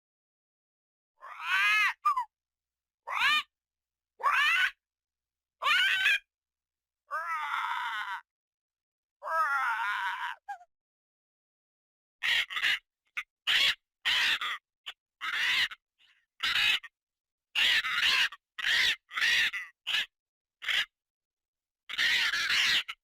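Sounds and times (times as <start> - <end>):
bird screeching calls: 1.2 - 2.3, 3.1 - 3.5, 4.2 - 4.8, 5.6 - 6.3, 12.2 - 14.6, 15.2 - 15.8, 16.4 - 16.9, 17.6 - 20.9, 21.9 - 23.0
bird harsh calls: 21.9 - 23.0.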